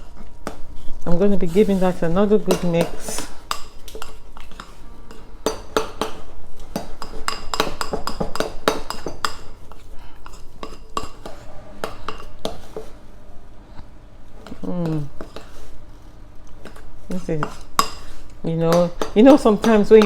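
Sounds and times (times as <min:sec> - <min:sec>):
utensil stirring batter in bowl: 0:00.0 - 0:13.0, 0:14.3 - 0:20.0.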